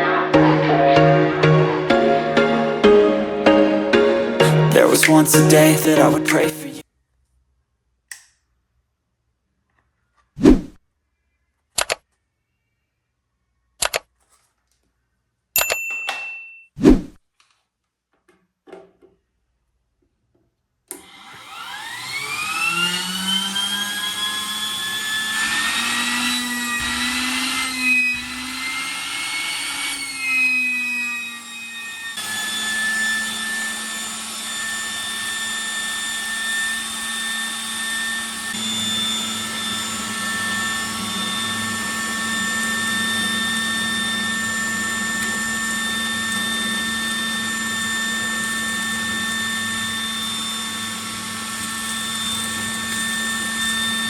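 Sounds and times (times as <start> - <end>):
vacuum cleaner motor whining: 20.9 - 54.0.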